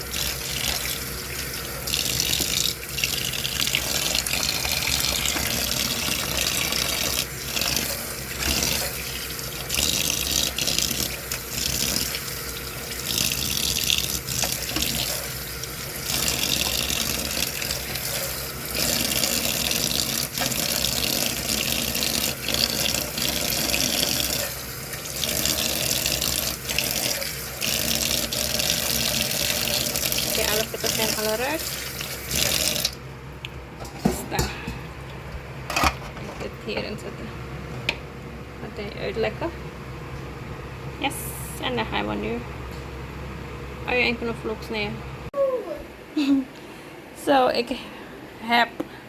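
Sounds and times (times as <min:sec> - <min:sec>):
tap water running into sink: 0:00.0 - 0:33.0.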